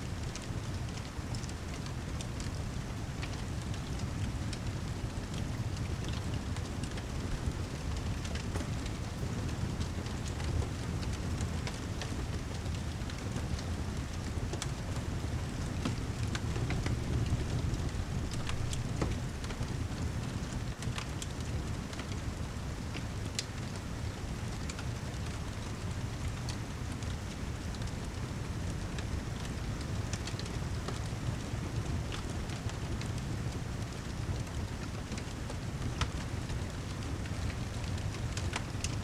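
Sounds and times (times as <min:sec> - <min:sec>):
heavy rain: 0:00.1 - 0:39.0
fireplace crackling: 0:00.3 - 0:25.8.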